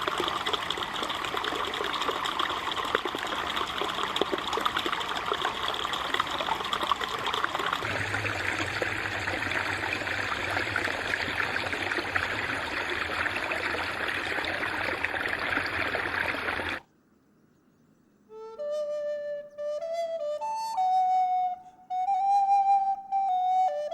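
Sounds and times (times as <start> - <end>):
brook babbling over stones: 0.0 - 16.8.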